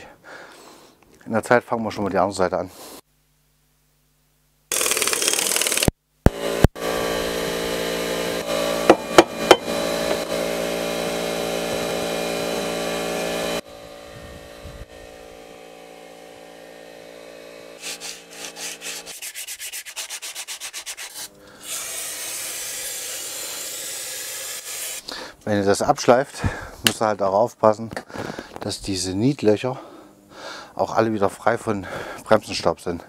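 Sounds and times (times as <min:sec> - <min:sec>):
sandpaper rubbing: 0:04.7 - 0:05.9, 0:17.8 - 0:25.0
hiss: 0:17.8 - 0:25.1.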